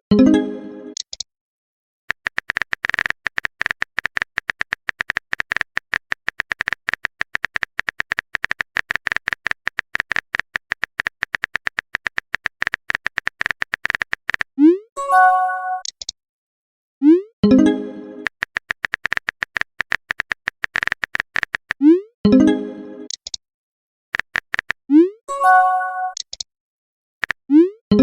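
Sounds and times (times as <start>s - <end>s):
keyboard key clicks: 2.1s - 14.5s, 18.2s - 21.8s, 24.2s - 24.8s.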